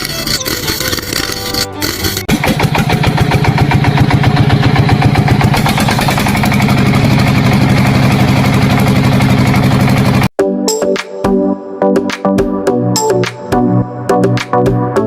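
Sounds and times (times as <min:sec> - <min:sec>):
small engine running: 0:00.0 - 0:10.3.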